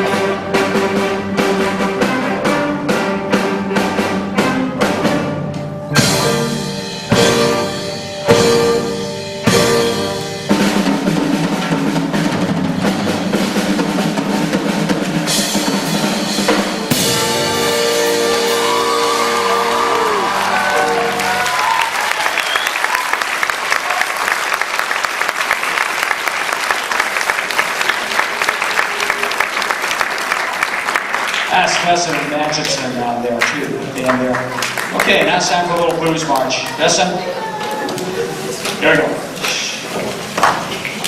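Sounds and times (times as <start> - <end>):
drums: 0.0 - 25.8, 26.7 - 41.0
concert band playing: 0.0 - 41.0
audience applause: 18.2 - 41.0.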